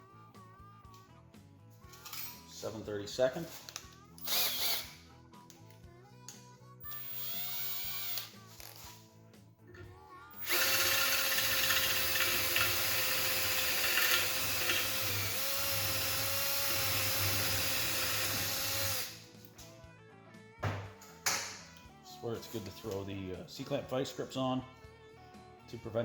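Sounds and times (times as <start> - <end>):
battery drill drilling metal: 4.2 - 5.0, 6.9 - 8.4, 10.4 - 19.2.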